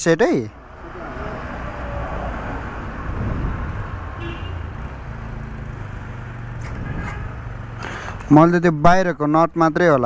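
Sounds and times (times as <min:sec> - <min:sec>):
road noise: 0:00.0 - 0:10.0
vehicle engine droning: 0:00.6 - 0:08.4.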